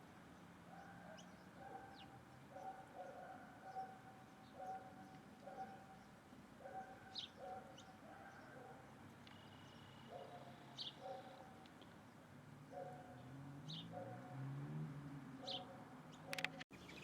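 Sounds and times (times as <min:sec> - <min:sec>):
birds calling low notes: 0:00.7 - 0:12.1.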